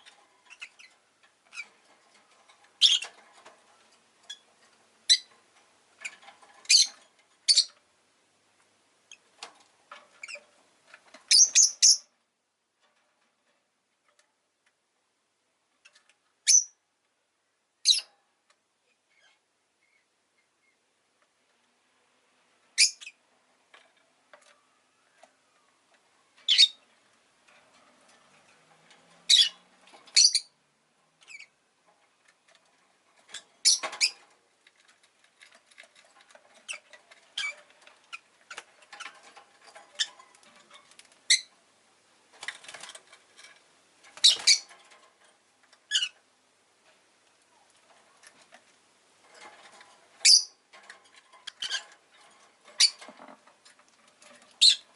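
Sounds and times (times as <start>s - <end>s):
bird chirping: 0.0s - 1.7s, 2.8s - 3.2s, 5.1s - 5.3s, 6.0s - 7.8s, 11.3s - 12.1s, 16.4s - 16.8s, 22.8s - 23.2s, 26.4s - 26.8s, 29.3s - 30.5s, 33.3s - 34.2s, 44.2s - 44.7s, 50.2s - 50.6s, 52.8s - 53.1s, 54.6s - 54.9s
soft bird chatter: 0.0s - 7.9s, 18.8s - 20.9s, 24.2s - 27.1s, 27.7s - 31.6s, 42.3s - 46.2s, 47.3s - 54.9s.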